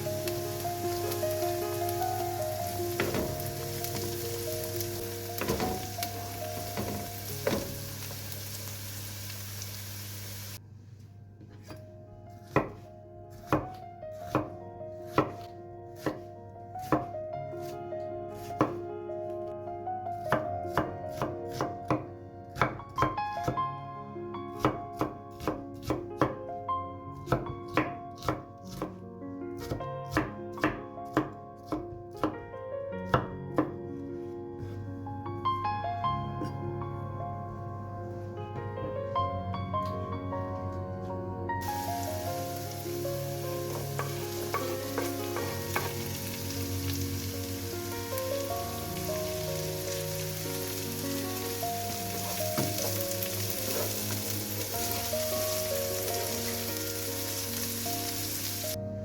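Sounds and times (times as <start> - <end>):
frying sizzle: 0.0 - 10.6, 41.6 - 58.8
soft background music: 0.0 - 59.0
knife chopping on cutting board: 5.4 - 5.8, 12.4 - 14.5, 15.1 - 17.1, 18.5 - 18.8, 27.3 - 29.0, 43.7 - 46.0, 52.6 - 53.0.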